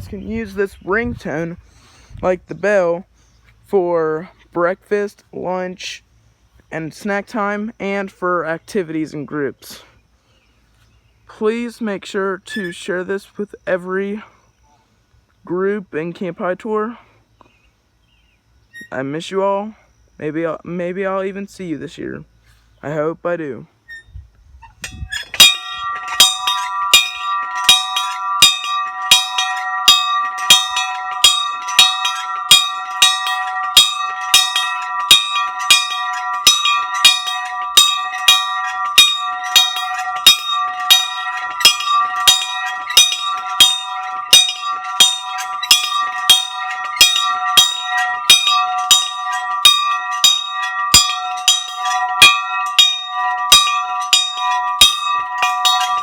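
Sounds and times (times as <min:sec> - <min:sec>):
bell ringing: 0:25.3 - 0:56.0.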